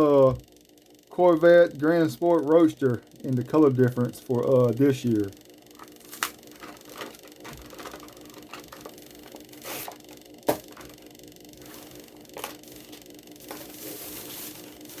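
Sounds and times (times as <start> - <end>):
faint steady hum: 0.0 - 15.0
packaging clicks: 5.8 - 9.5
plastic and card crinkling: 5.8 - 10.0.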